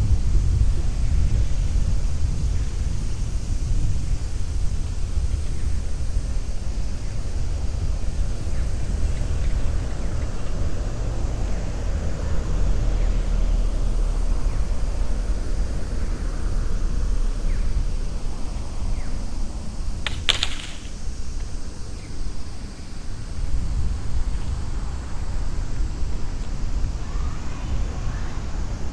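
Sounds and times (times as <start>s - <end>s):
city street traffic rumble: 0.0s - 28.9s
sharp double click: 20.1s - 21.0s.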